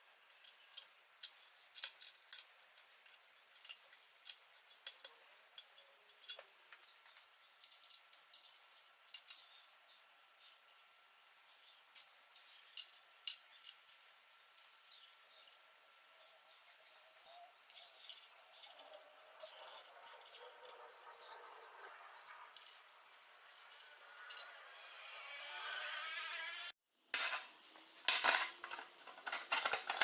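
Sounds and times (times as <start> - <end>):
metallic clicks of small parts: 0.2 - 9.7, 11.9 - 15.7, 17.6 - 20.3, 23.5 - 24.7, 27.2 - 30.0.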